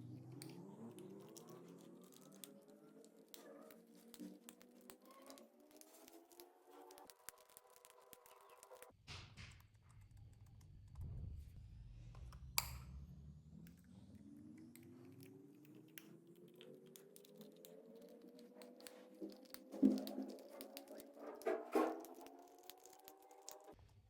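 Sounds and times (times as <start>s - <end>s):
slime squishing with sticky clicks: 0.2s - 8.9s
low rising tone: 10.9s - 17.4s.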